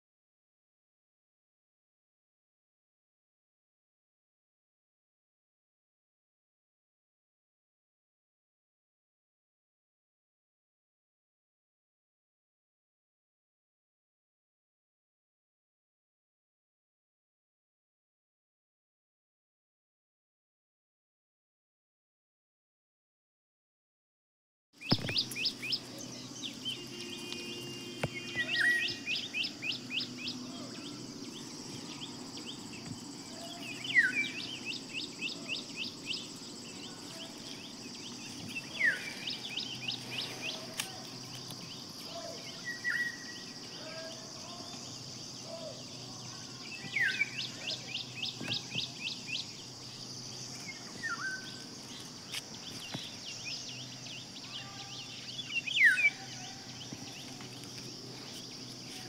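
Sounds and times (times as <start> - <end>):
birds chirping: 24.8 - 59.0
high insect drone: 24.8 - 59.0.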